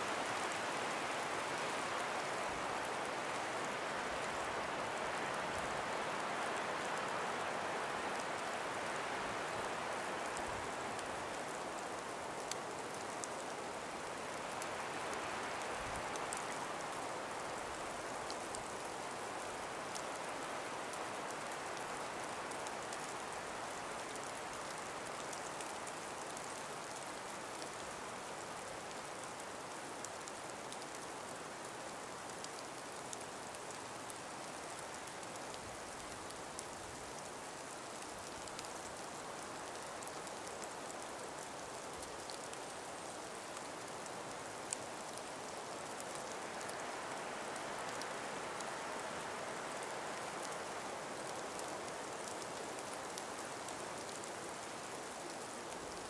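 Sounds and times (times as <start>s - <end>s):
breeze through forest: 0.0s - 56.0s
faint ticks: 28.9s - 56.0s.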